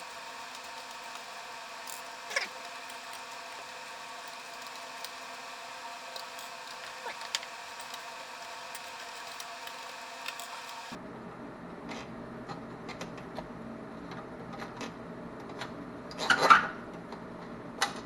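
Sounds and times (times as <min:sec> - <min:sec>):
steady hum: 0:00.0 - 0:12.4.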